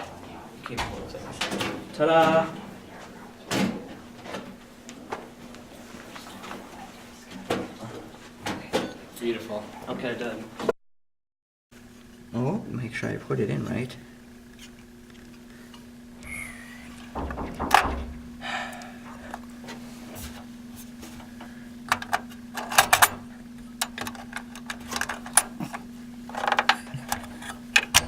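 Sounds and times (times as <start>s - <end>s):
steady low hum: 0.0s - 10.6s, 11.8s - 28.0s
computer parts clicking and clattering: 21.9s - 23.2s.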